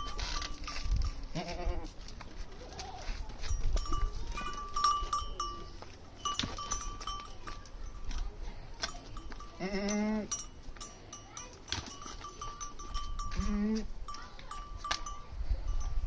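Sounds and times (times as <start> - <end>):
livestock bells ringing: 0.0 - 1.4, 3.3 - 16.0
animal bleating: 1.3 - 1.9, 9.6 - 10.3, 13.4 - 13.9.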